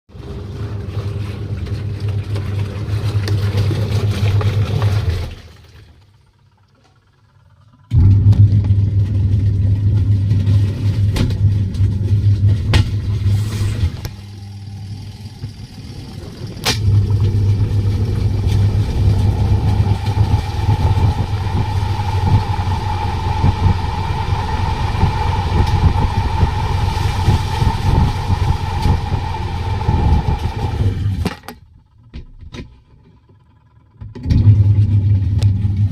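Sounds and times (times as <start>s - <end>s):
spin-dryer motor humming: 0.1s - 35.9s
high-pitched whine: 7.9s - 31.2s.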